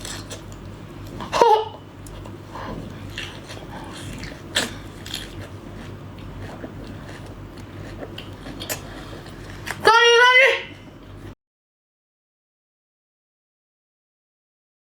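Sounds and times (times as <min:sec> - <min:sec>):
biting and chewing shrimp: 0:00.0 - 0:09.9.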